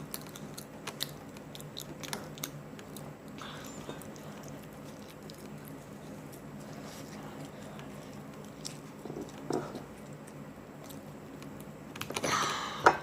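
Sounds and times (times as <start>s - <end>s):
biting and chewing food: 0.0s - 12.3s.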